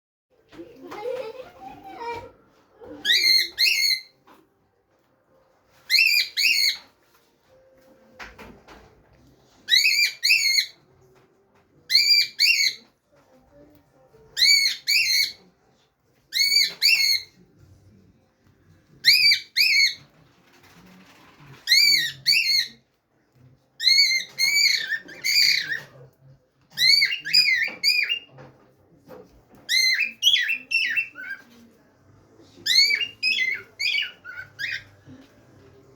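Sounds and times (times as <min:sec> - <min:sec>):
cockatiel whistling: 0:03.0 - 0:04.2, 0:05.8 - 0:06.9, 0:09.6 - 0:10.8, 0:11.9 - 0:12.8, 0:14.4 - 0:15.4, 0:16.3 - 0:17.3, 0:19.0 - 0:20.0, 0:21.6 - 0:22.8, 0:23.8 - 0:25.9, 0:26.7 - 0:28.3, 0:32.6 - 0:34.9.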